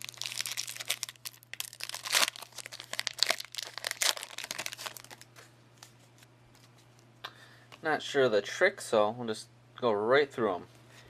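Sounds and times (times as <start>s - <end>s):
foil pack tearing and crinkling: 0.0s - 5.3s.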